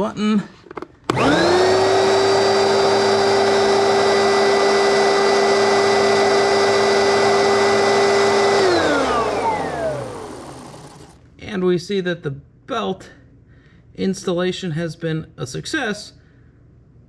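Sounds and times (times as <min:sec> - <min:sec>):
vacuum cleaner running: 0:01.1 - 0:11.2.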